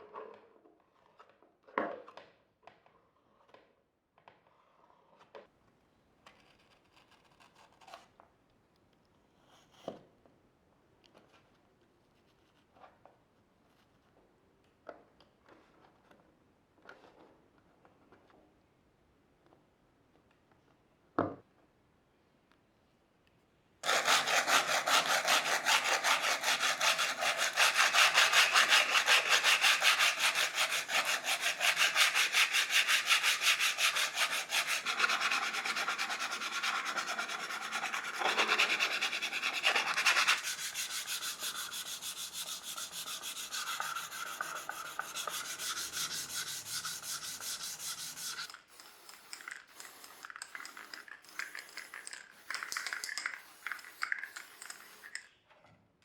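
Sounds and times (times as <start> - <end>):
fast rubbing on hard surface: 23.8 - 48.5.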